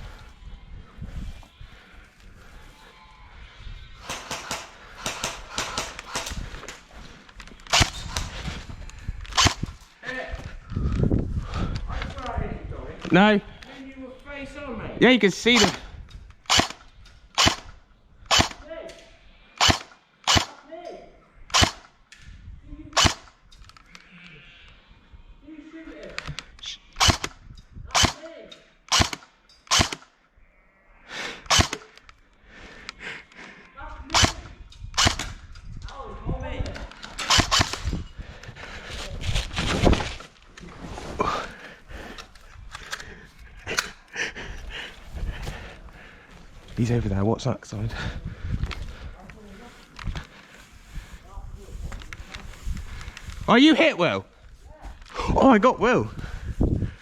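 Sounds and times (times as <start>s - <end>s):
airsoft guns firing: 4.0s - 6.4s, 7.7s - 8.2s, 15.5s - 15.8s, 16.5s - 16.8s, 17.4s - 17.7s, 18.3s - 18.6s, 19.6s - 20.6s, 21.5s - 21.9s, 23.0s - 23.3s, 27.0s - 28.2s, 28.9s - 30.1s, 31.5s - 32.0s, 37.2s - 37.9s.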